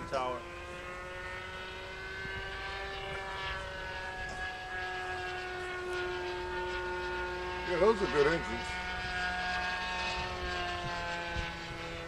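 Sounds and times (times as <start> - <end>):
model airplane engine droning: 0.0 - 12.0.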